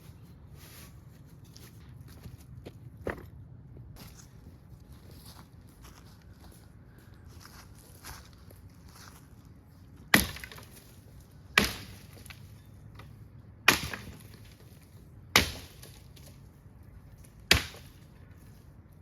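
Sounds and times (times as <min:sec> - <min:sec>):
axe chopping firewood: 0:10.1 - 0:16.4, 0:17.2 - 0:18.1.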